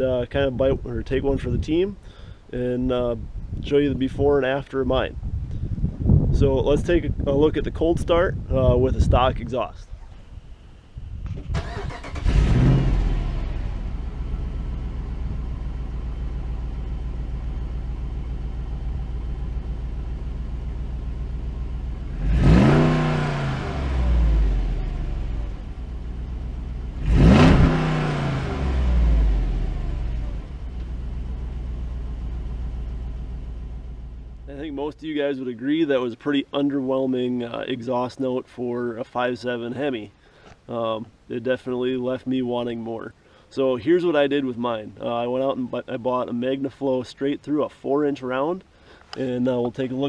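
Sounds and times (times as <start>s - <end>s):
car engine idling and revving: 11.2s - 34.5s.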